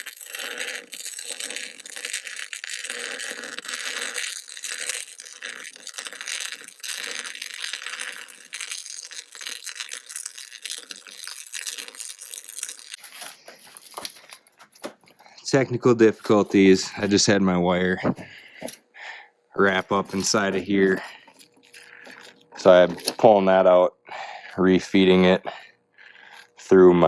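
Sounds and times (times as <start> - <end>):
welding arc crackling: 0.0 - 14.5, 19.6 - 23.3.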